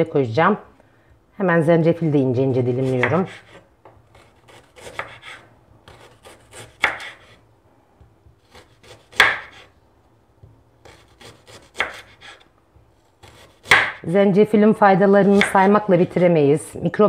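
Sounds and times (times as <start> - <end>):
knife slicing on cutting board: 2.9 - 7.4, 8.4 - 9.7, 10.8 - 12.5, 13.2 - 14.0.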